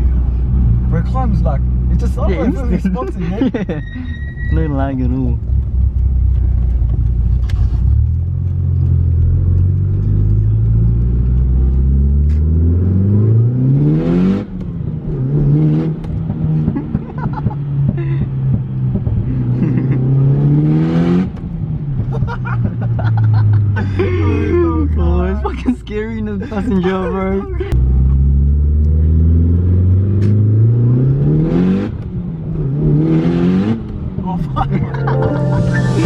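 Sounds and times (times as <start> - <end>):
turbo car engine accelerating: 4.5 - 26.0, 26.8 - 36.0.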